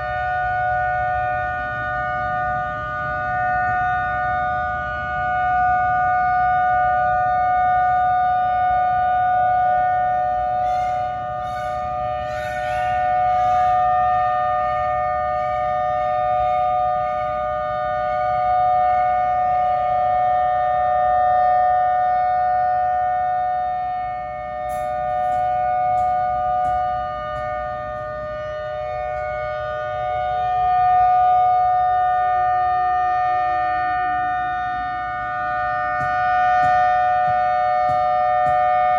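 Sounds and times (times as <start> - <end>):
warning siren two-note tone: 0.0 - 38.9
peacocks crying: 10.6 - 13.7.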